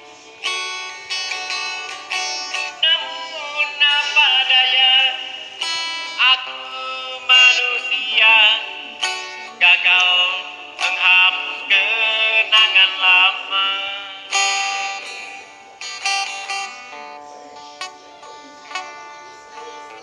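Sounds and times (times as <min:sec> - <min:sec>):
person singing: 0:00.0 - 0:20.0
plucked string instrument: 0:00.0 - 0:20.0.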